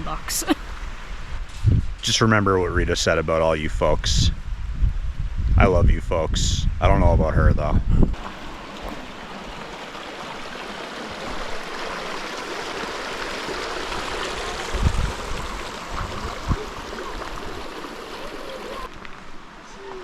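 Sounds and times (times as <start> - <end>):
creek water rushing: 8.1 - 18.9.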